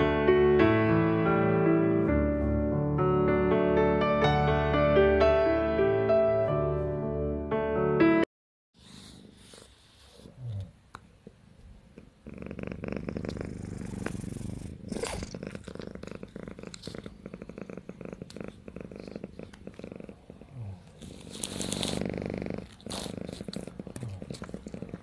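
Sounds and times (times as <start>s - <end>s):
kitten purring: 11.8s - 25.0s.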